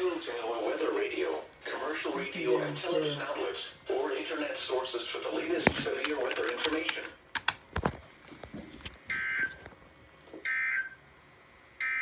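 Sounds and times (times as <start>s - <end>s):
sharp clicks: 5.5s - 8.0s.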